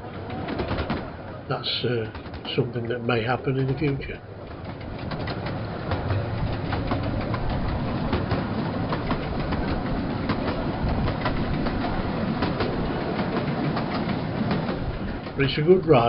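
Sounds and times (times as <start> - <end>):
miniature train rumbling: 0.0 - 16.0
wheels clicking over rail joints: 0.0 - 16.0.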